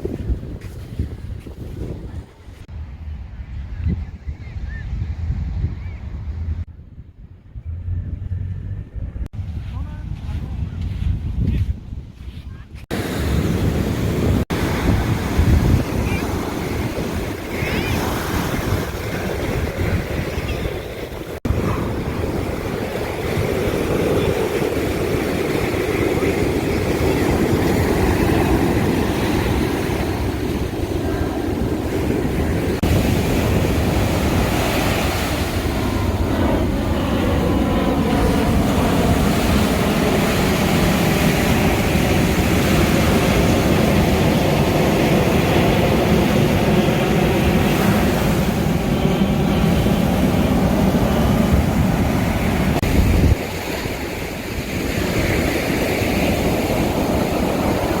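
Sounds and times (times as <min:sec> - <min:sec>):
wind: 0:00.0 - 0:58.0
surf: 0:12.9 - 0:58.0.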